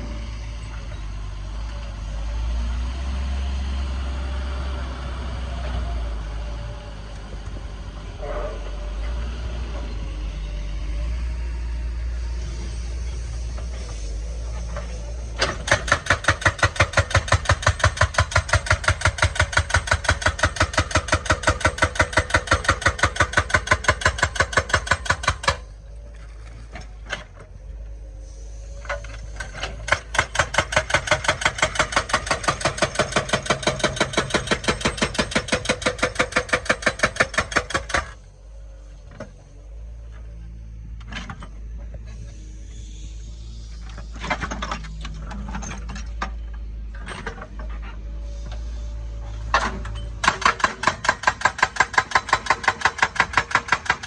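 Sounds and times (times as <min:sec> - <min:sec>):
diesel engine running: 0:00.0 - 0:54.0
hydraulic breaker hammering: 0:15.4 - 0:25.7, 0:29.4 - 0:38.2, 0:49.5 - 0:54.0.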